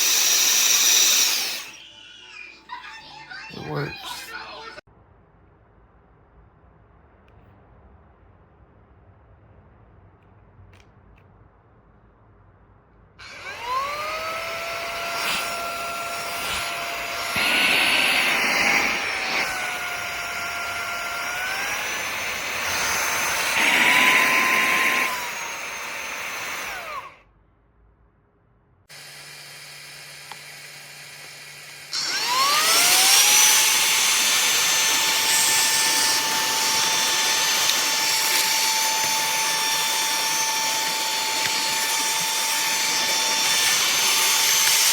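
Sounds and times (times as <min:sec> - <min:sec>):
handheld vacuum motor whining: 0:00.0 - 0:04.6, 0:13.2 - 0:27.2, 0:28.9 - 0:44.9.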